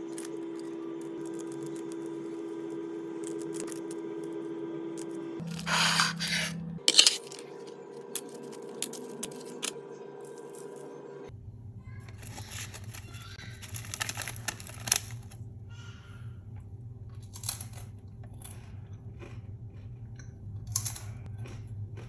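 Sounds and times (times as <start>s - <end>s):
potato chips crunching: 0.0s - 4.4s, 5.0s - 10.8s, 12.2s - 15.2s
steady low hum: 0.0s - 12.4s.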